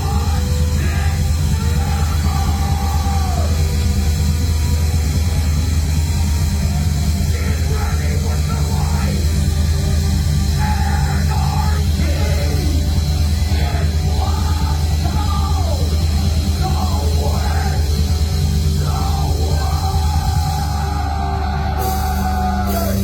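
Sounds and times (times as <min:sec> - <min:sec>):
person yelling or singing: 0:00.0 - 0:03.6, 0:07.3 - 0:09.3, 0:10.5 - 0:18.1, 0:18.7 - 0:23.0
rock band playing: 0:00.0 - 0:23.0.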